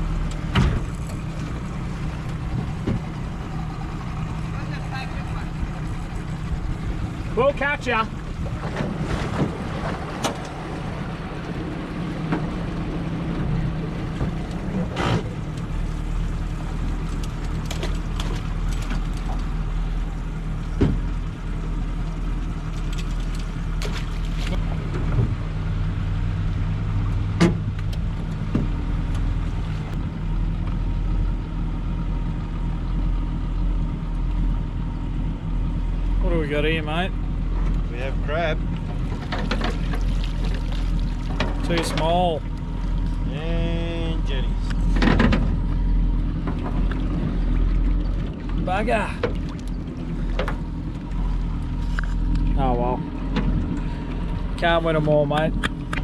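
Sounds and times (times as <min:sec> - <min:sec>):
boat motor running: 0:00.0 - 0:56.0
deep low hum: 0:00.0 - 0:56.0
sharp knocks and clicks: 0:45.0 - 0:45.6.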